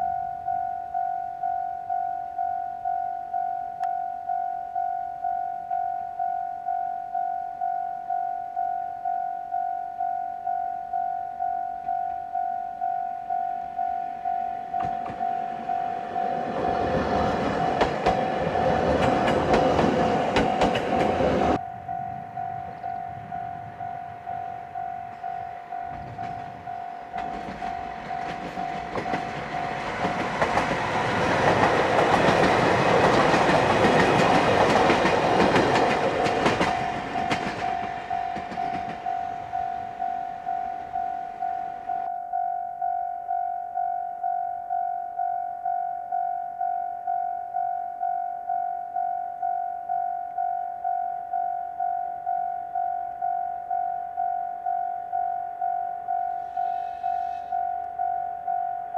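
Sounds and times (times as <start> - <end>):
level crossing bell ringing: 0.0 - 32.9, 33.5 - 58.9
train rumbling and wheel clatter: 14.8 - 41.8.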